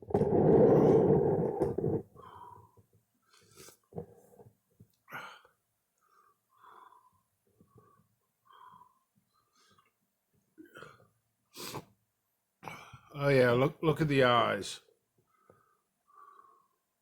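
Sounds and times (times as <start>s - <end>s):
strained wheezy breaths: 0.6s - 4.3s, 5.1s - 10.0s, 15.2s - 17.0s
man breathing raggedly: 6.1s - 9.9s.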